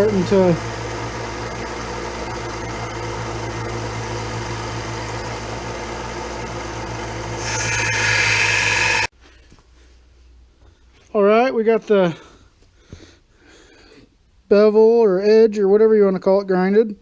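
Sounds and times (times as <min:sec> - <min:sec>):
power grinder grinding steel: 0:06.4 - 0:09.1.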